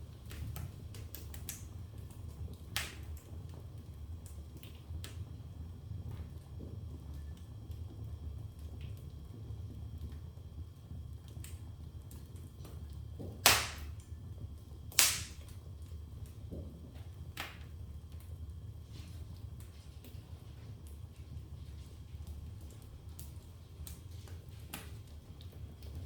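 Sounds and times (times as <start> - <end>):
fire crackling: 0.0 - 26.0
loud sharp pops of burning wood: 2.7 - 3.2, 13.2 - 14.1, 14.9 - 15.6.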